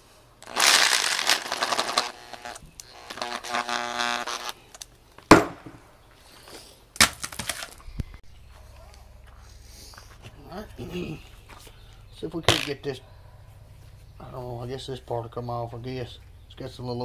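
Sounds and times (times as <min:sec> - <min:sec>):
brief buzzing tone: 0:01.4 - 0:04.6
sharp knocks: 0:05.3 - 0:05.8.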